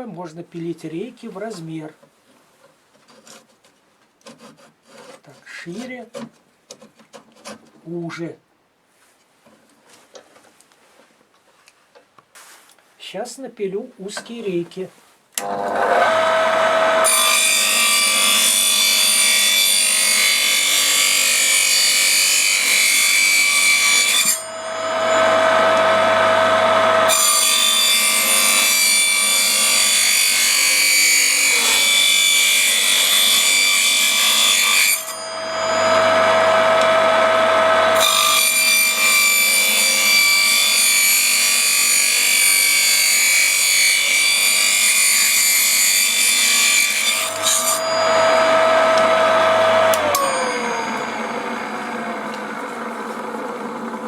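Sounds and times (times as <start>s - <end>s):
circular saw cutting wood: 15.4s - 54.0s
saw blade spinning freely: 47.3s - 54.0s.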